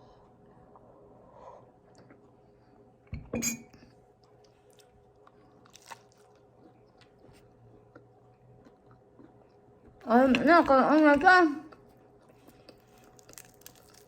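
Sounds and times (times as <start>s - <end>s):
quiet chewing: 1.8s - 2.8s, 3.8s - 14.0s
tableware clinking on table: 3.2s - 3.8s.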